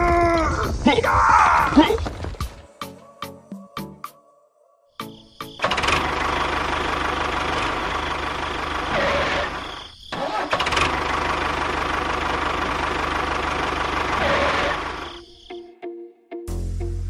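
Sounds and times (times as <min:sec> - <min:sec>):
tractor engine running: 0:05.6 - 0:15.2.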